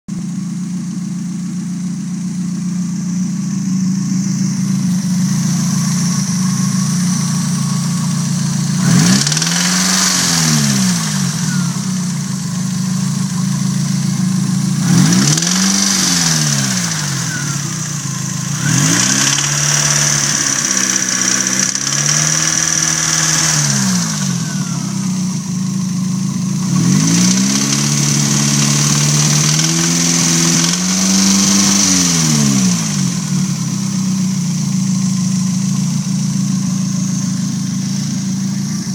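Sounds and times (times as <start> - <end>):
car engine idling and revving: 0.0 - 38.9
engine knocking noise: 0.1 - 38.9.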